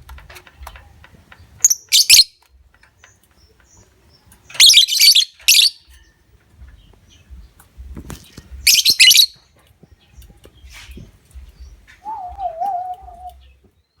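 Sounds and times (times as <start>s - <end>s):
bird harsh chattering: 1.6s - 2.3s, 4.5s - 5.9s, 8.6s - 9.4s, 12.0s - 13.4s
faint bird chirps: 8.6s - 14.0s
wavering whistle-like bird note: 12.0s - 13.4s.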